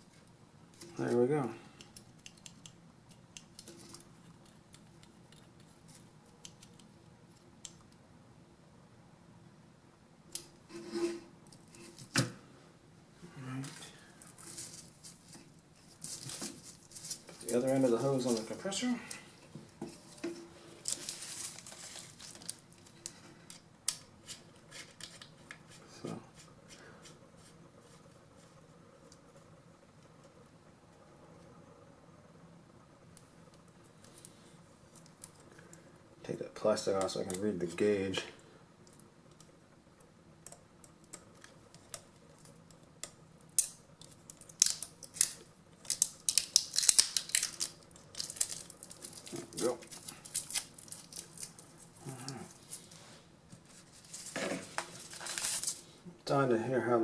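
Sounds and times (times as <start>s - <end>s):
hose rustling: 19.9s - 23.2s, 48.2s - 56.0s
plastic film crackling: 20.1s - 25.4s, 41.3s - 53.0s, 53.6s - 56.0s.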